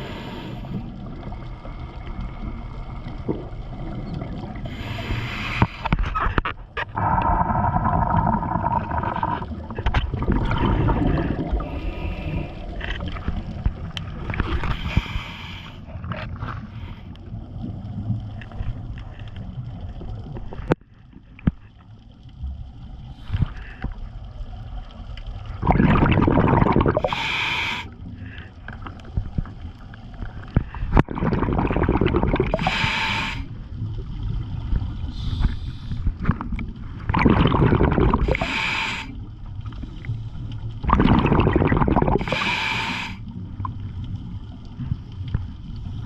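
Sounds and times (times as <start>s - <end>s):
hissing regulator inhalations: 0.0s - 0.9s, 4.6s - 6.0s, 11.1s - 12.9s, 14.6s - 15.9s, 26.9s - 28.4s, 32.5s - 33.6s, 35.1s - 36.1s, 38.2s - 39.2s, 42.0s - 43.3s
exhaled bubbles: 6.8s - 15.2s, 25.4s - 27.5s, 30.4s - 45.0s.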